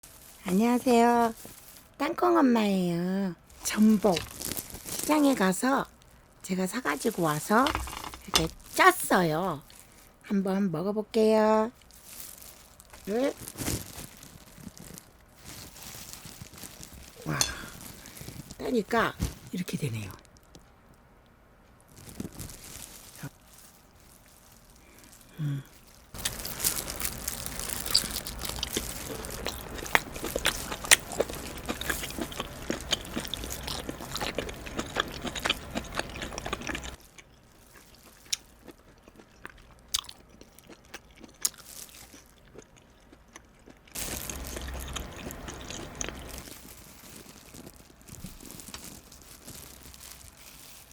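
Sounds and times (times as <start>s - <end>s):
crunchy chewing: 3.5s - 5.4s, 11.8s - 18.6s, 21.9s - 50.9s.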